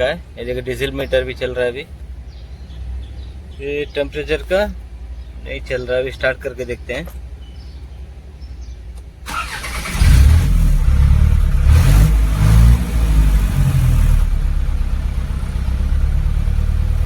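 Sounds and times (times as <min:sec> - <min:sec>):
diesel truck engine starting: 0:09.0 - 0:17.0.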